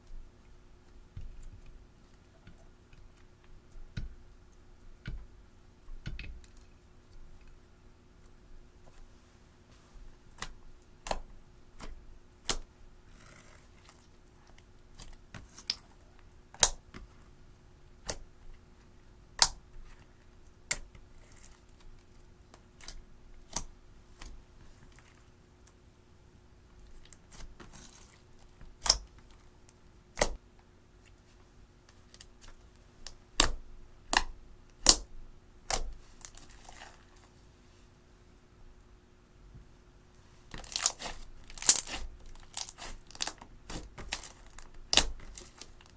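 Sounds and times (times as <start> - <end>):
slime rustling: 35.7 - 37.9, 40.2 - 45.9.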